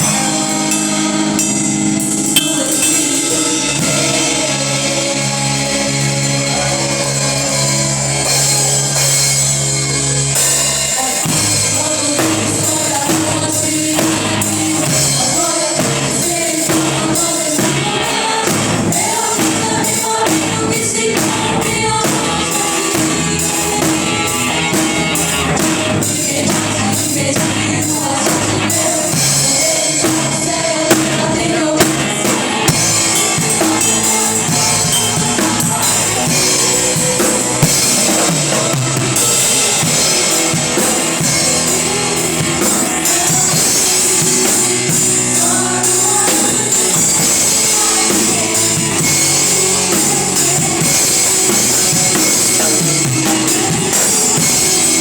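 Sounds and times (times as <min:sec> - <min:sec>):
drum kit: 0:00.0 - 0:55.0
person singing: 0:00.0 - 0:55.0
worship music: 0:00.0 - 0:55.0
sharp accented drum hits: 0:02.3 - 0:04.2.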